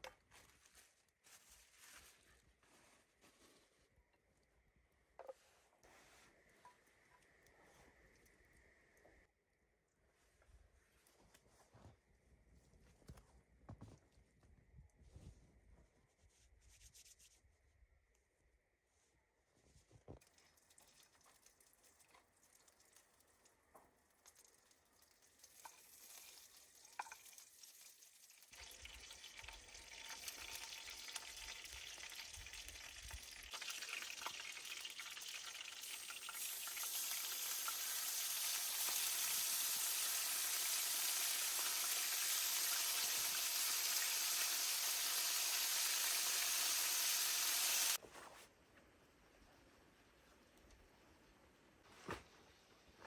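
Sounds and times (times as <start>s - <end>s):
faint fire crackles: 0.0s - 9.3s, 19.7s - 43.1s, 47.2s - 53.0s
campfire sizzling: 25.3s - 48.0s.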